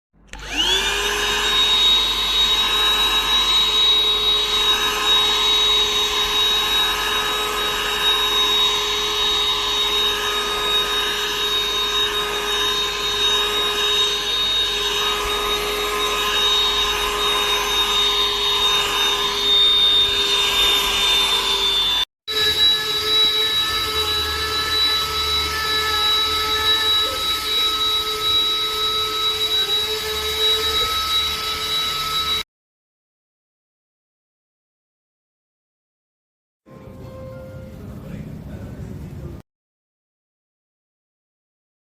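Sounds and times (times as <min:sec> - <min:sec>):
handheld vacuum cleaner whining: 0:00.2 - 0:32.5.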